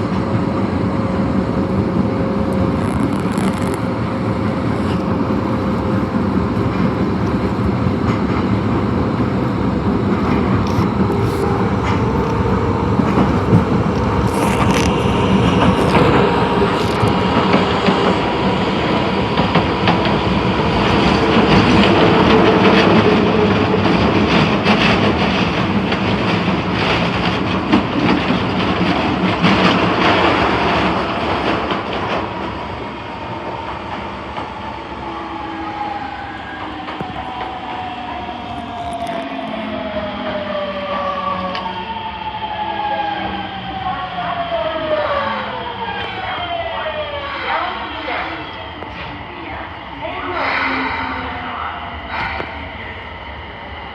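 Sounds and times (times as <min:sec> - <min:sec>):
subway train running: 0:00.0 - 0:53.9.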